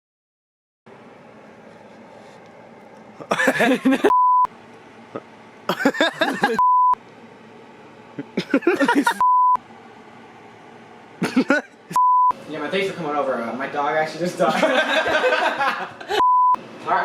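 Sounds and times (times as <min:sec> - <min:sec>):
man sneezing: 0:03.2 - 0:04.1
censor beep: 0:04.1 - 0:04.5, 0:06.6 - 0:07.0, 0:09.2 - 0:09.6, 0:12.0 - 0:12.3, 0:16.2 - 0:16.6.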